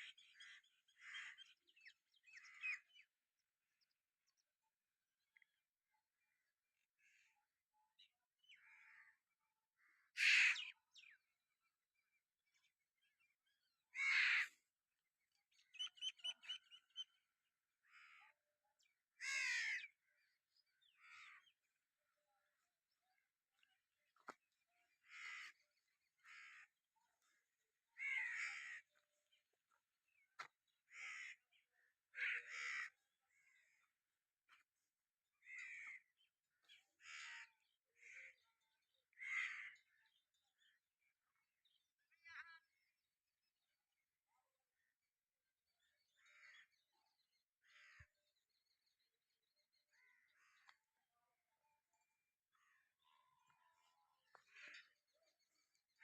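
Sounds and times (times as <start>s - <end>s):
crows cawing: 0.1s - 1.6s, 10.0s - 10.7s, 13.9s - 14.6s, 17.8s - 18.4s, 19.2s - 20.0s, 21.0s - 21.5s, 25.0s - 25.6s, 26.2s - 26.8s, 28.0s - 29.1s, 30.4s - 33.8s, 35.4s - 36.1s, 37.0s - 38.4s, 39.1s - 39.9s.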